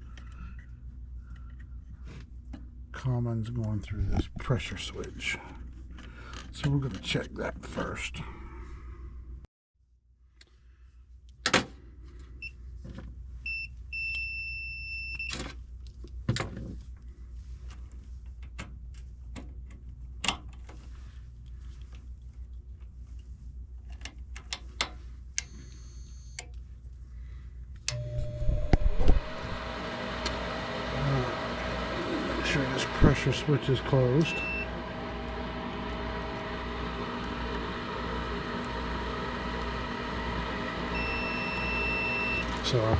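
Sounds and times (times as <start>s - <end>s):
steady low hum: 24.9s - 42.9s
draft motor whine: 27.9s - 42.9s.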